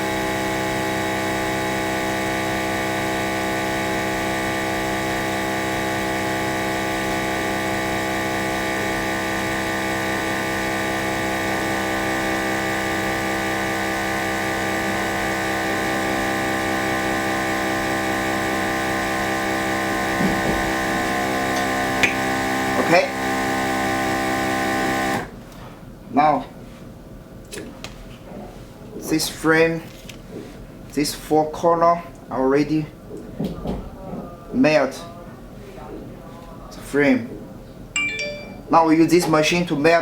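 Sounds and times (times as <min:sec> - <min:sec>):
vacuum pump humming: 0:00.0 - 0:25.4.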